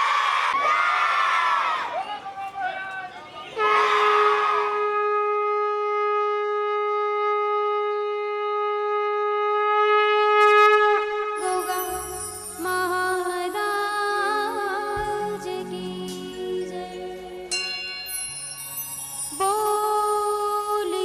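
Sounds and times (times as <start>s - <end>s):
conch shell blown: 3.6s - 12.9s
devotional music with drums: 11.4s - 20.6s.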